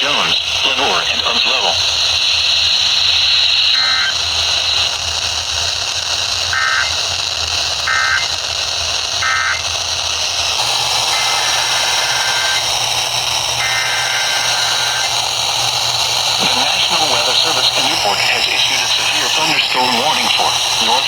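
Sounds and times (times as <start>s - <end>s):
data bursts: 0.0s - 5.0s, 6.4s - 8.4s, 9.1s - 21.0s
radio hiss: 0.0s - 21.0s
buzzy two-tone chirps: 3.2s - 4.9s, 6.5s - 7.0s, 7.9s - 8.3s, 9.2s - 9.7s, 11.0s - 12.8s, 13.5s - 15.4s.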